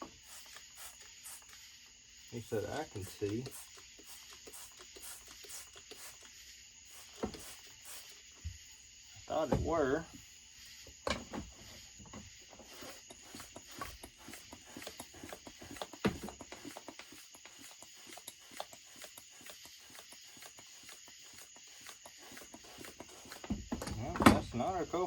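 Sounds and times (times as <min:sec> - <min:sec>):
clicking of handled tools and parts: 0:12.7 - 0:24.4.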